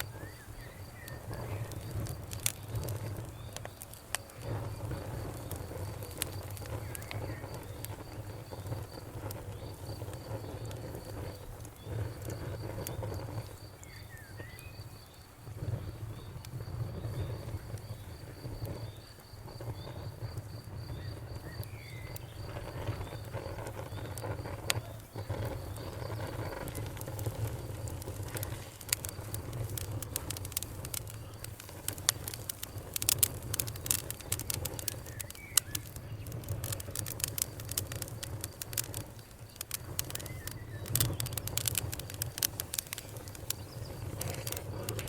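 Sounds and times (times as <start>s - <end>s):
campfire crackling and popping: 0.0s - 45.0s
crickets chirping: 0.0s - 45.0s.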